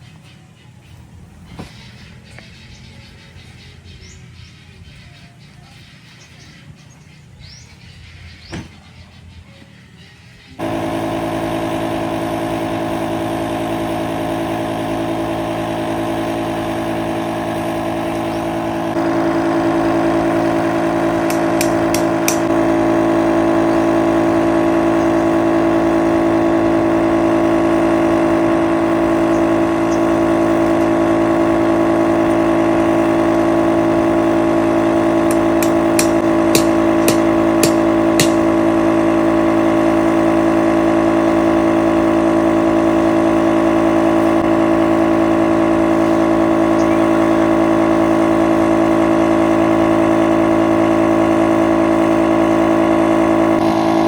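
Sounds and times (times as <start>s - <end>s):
motor running steadily: 0.0s - 54.0s
sharp clicks: 21.2s - 22.5s.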